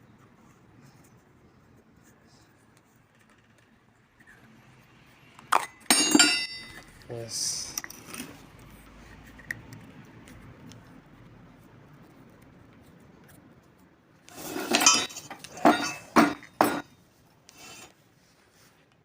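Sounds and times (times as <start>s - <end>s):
metallic clinks and rattles: 5.6s - 7.0s, 14.4s - 16.9s.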